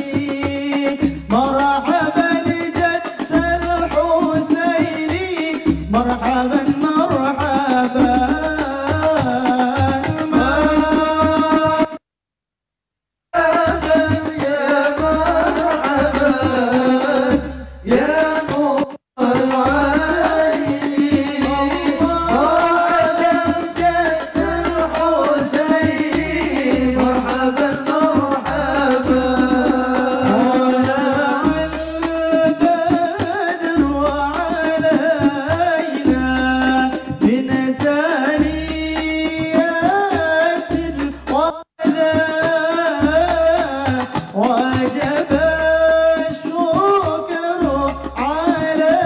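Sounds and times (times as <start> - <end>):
hand percussion: 0.0 - 12.0, 13.4 - 49.0
person singing: 13.4 - 49.0
deep drum beat: 19.2 - 37.8.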